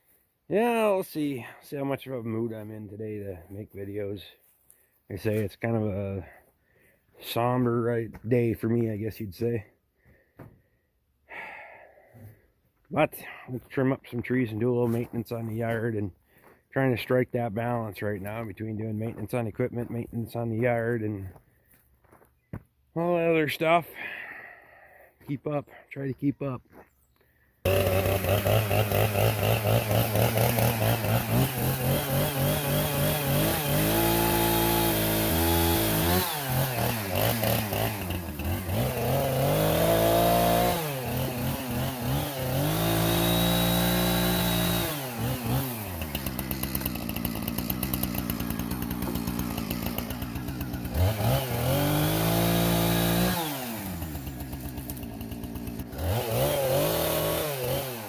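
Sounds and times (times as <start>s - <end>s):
chainsaw cutting tree limbs: 27.6s - 58.0s
chainsaw revving and idling: 27.6s - 58.0s.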